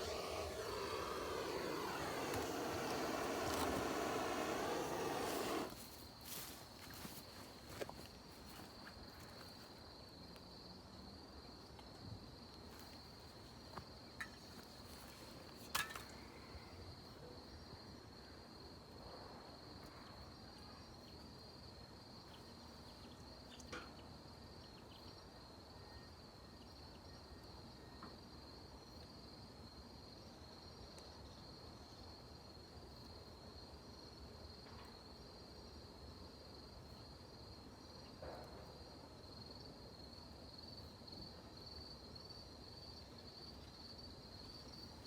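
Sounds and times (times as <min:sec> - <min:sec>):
insect trilling: 0:00.0 - 0:05.8.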